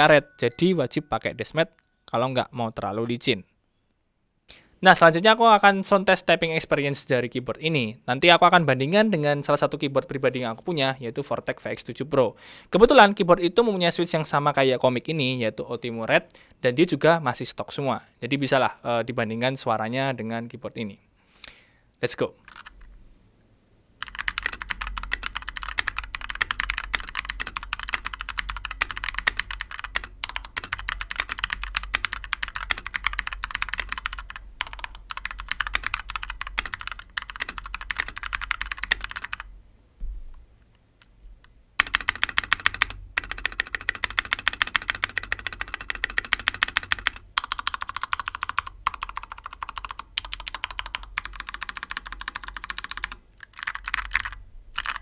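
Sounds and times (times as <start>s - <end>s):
fast typing on mechanical keyboard: 22.5s - 22.7s, 24.0s - 39.5s, 41.8s - 55.0s.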